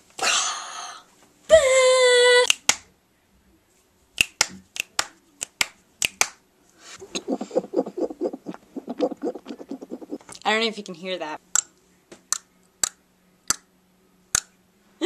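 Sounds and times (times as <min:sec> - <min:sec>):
fast run of soft clicking ticks: 0:07.2 - 0:10.5.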